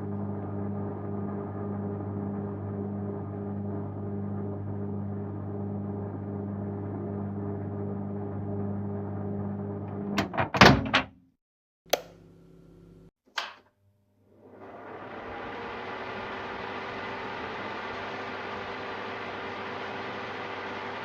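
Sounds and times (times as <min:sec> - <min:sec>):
kitchen appliance humming: 0:00.0 - 0:10.4, 0:14.2 - 0:21.0
latch clacking: 0:10.2 - 0:11.1
single clicks: 0:11.9 - 0:12.2.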